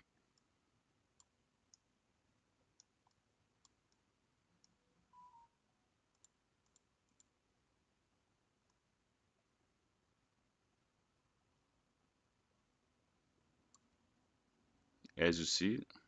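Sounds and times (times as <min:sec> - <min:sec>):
computer mouse clicks: 0:01.2 - 0:01.9, 0:02.8 - 0:04.8, 0:06.1 - 0:07.4
faint tone: 0:05.1 - 0:05.6.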